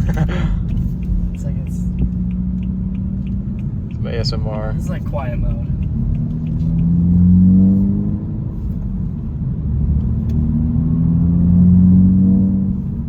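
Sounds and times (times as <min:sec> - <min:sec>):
car exhaust droning: 0:00.0 - 0:13.0.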